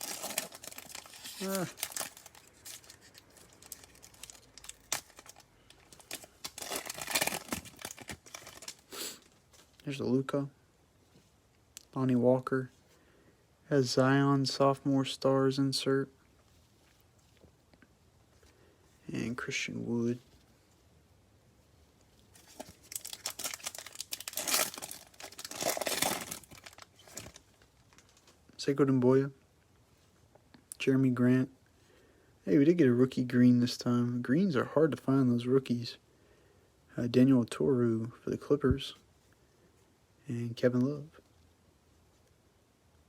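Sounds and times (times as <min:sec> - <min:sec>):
cards being handled: 0:00.0 - 0:08.9
wrapper crinkling: 0:00.0 - 0:09.8, 0:22.3 - 0:28.4.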